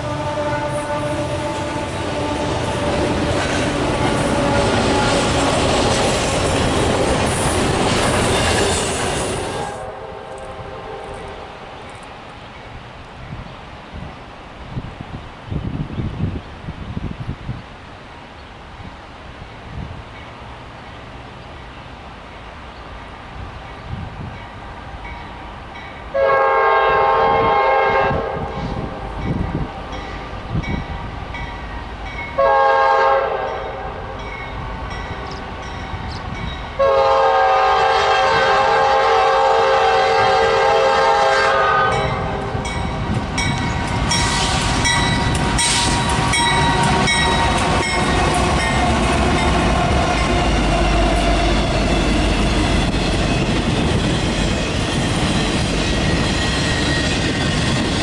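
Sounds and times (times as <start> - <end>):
locomotive air horn blasts: 0.0 - 5.6, 9.4 - 11.6, 26.1 - 29.0, 32.4 - 34.2, 36.8 - 42.8
wheels clacking over rail joints: 1.5 - 9.6, 42.4 - 58.0.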